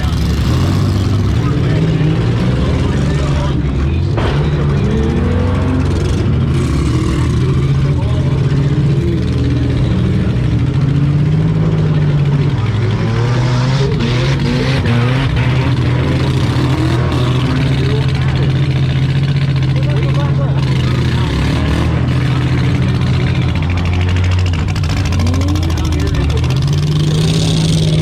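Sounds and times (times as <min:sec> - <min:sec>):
car engine revving: 0:00.0 - 0:28.0.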